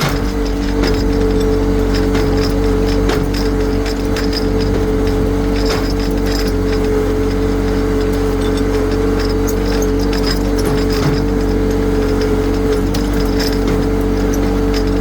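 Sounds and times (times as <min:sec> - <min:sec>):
engine running with whine: 0:00.0 - 0:15.0.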